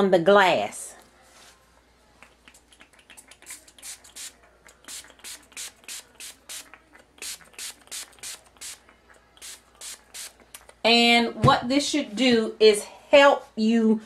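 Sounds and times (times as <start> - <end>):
spray bottle squirting: 2.4 - 10.8.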